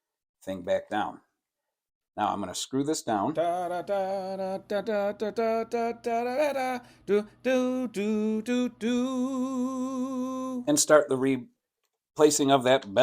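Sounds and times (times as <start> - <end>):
man singing wordless tune: 2.2 - 10.8.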